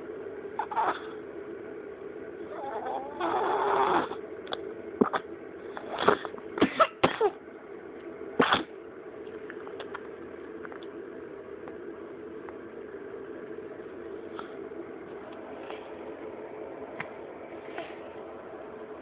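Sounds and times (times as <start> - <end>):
steady low hum: 0.0 - 19.0
person coughing: 6.0 - 7.4.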